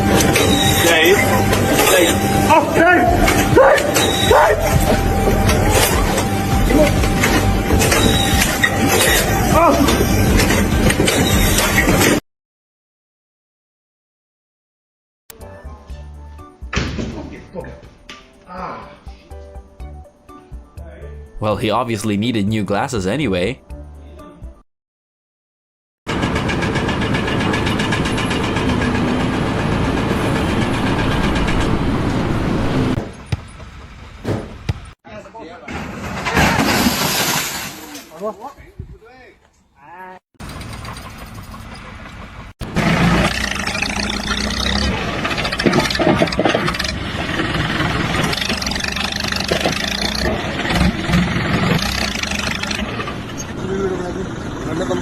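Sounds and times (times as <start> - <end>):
loud mechanical running noise: 0.0 - 12.1, 26.1 - 34.9, 40.4 - 55.0
sharp knocks: 33.0 - 35.0
clatter and knocks: 45.2 - 47.0.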